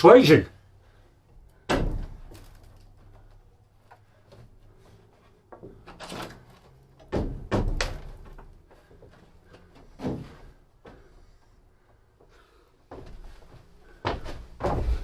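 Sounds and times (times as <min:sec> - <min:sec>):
wooden knocks and thuds: 0:01.6 - 0:03.3, 0:06.8 - 0:11.1, 0:14.0 - 0:15.0.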